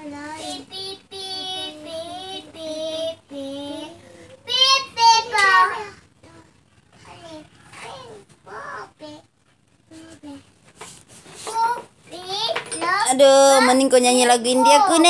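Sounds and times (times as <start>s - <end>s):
young child singing: 0.0s - 6.5s.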